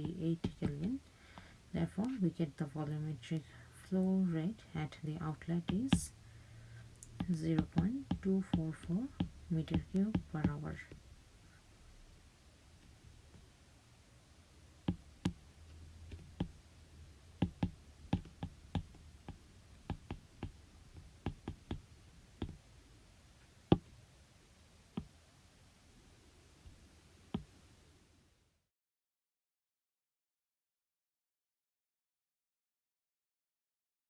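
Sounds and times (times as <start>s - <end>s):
sharp clicks and taps: 0.0s - 2.2s, 5.6s - 6.1s, 6.9s - 11.0s, 16.1s - 16.6s, 17.4s - 21.8s, 22.4s - 22.6s
faint low hum: 0.0s - 28.7s.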